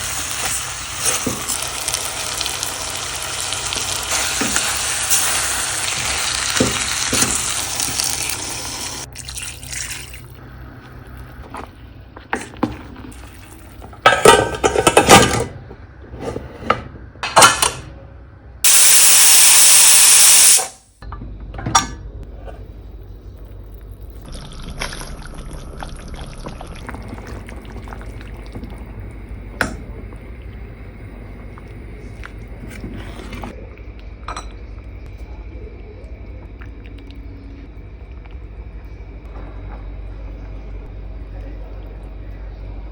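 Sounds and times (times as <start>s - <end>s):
sizzling in a pan: 0.0s - 9.1s, 18.7s - 20.9s
steady low hum: 0.0s - 18.7s, 20.9s - 42.9s
liquid being poured: 0.7s - 12.0s, 23.4s - 33.5s.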